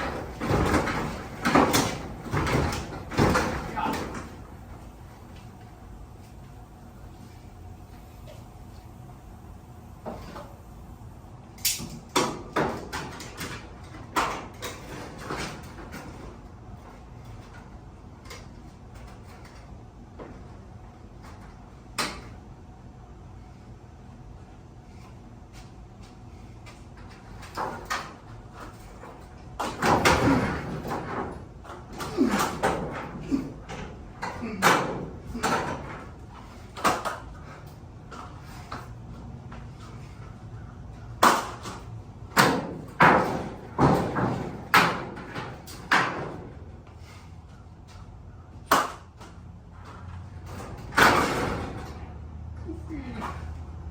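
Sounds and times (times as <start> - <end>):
garage door knocking and clattering: 0.0 - 4.6, 12.1 - 16.4, 27.2 - 36.2, 41.2 - 46.6, 50.4 - 52.2.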